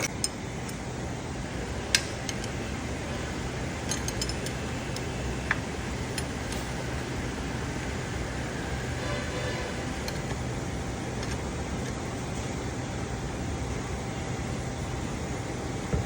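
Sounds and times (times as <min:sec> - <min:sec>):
steady low hum: 0:00.0 - 0:16.0
metallic clinks: 0:03.8 - 0:07.0.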